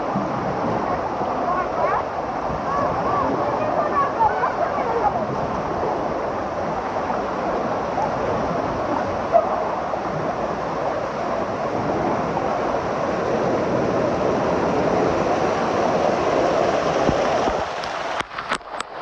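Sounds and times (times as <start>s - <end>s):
rushing churning water: 0.0s - 19.0s.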